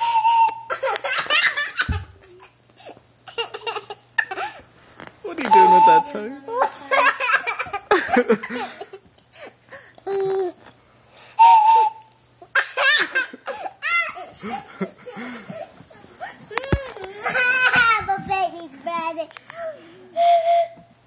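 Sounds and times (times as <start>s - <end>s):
toy train whistle: 0.0s - 0.7s, 5.4s - 6.2s
people laughing: 6.6s - 9.0s, 14.3s - 16.2s.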